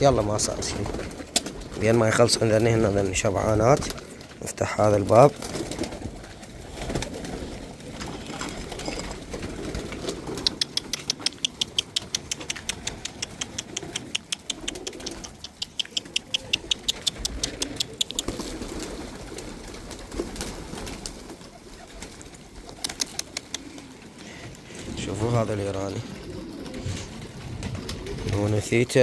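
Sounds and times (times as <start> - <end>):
pigeons cooing: 0.0 - 29.0
fast sharp clicks: 9.4 - 18.8, 22.2 - 23.9.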